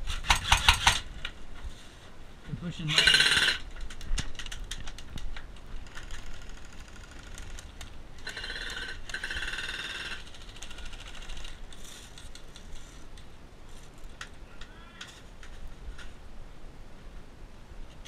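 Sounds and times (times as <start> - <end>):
rapid full-auto airsoft fire: 0.1 - 1.1.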